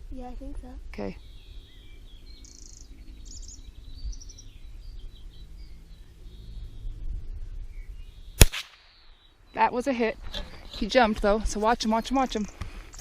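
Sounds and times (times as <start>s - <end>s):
low outdoor rumble: 0.0s - 12.6s
birds chirping: 0.1s - 13.0s
gunshot: 8.4s - 9.0s.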